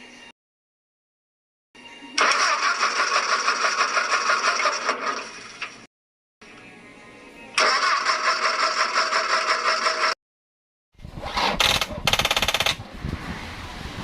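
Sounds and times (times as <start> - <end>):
diesel engine cranking: 2.2 - 4.6, 7.6 - 10.2
fast rattle: 11.6 - 12.8.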